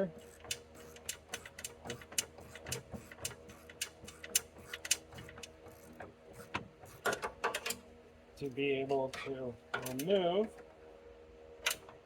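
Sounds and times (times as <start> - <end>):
hand ratchet clicking: 0.3 - 7.8.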